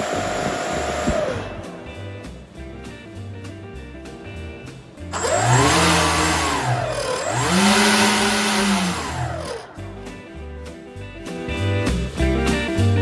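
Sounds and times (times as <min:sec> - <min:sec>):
electric motor propeller whine: 0:00.0 - 0:01.8, 0:05.2 - 0:09.8
rushing airflow: 0:00.0 - 0:02.6.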